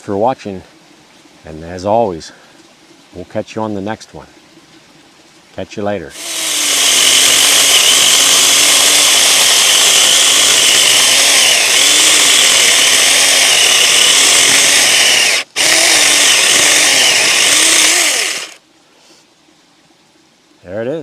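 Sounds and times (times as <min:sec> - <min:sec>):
electric chainsaw running: 0:06.2 - 0:18.6.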